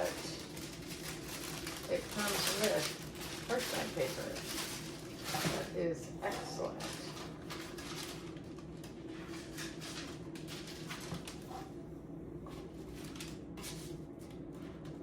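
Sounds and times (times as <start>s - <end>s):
parchment paper rustling: 0.0s - 11.8s, 12.4s - 15.0s
steady low hum: 0.0s - 15.0s.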